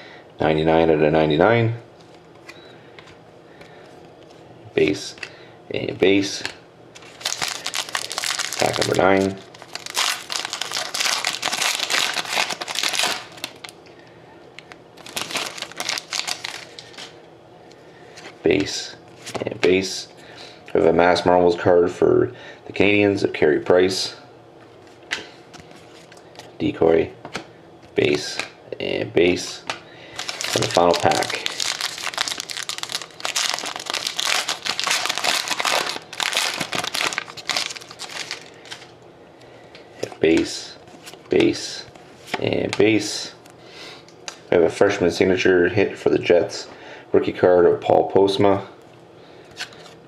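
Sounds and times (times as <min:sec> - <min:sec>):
wrapper tearing: 0:07.0 - 0:13.7, 0:14.6 - 0:17.1, 0:30.2 - 0:38.9
wrapper crinkling: 0:07.0 - 0:13.8, 0:14.6 - 0:17.1, 0:30.1 - 0:39.0.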